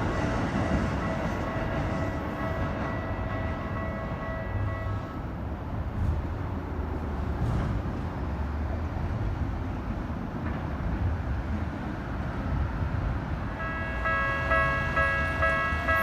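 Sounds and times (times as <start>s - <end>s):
level crossing warning bell: 0.0s - 5.2s, 13.6s - 16.0s
road traffic rumble: 0.0s - 16.0s.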